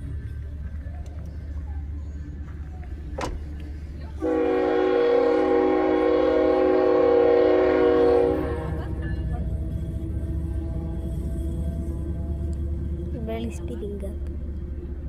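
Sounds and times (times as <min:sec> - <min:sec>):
train rumble: 0:00.0 - 0:15.0
train air horn: 0:04.2 - 0:09.0.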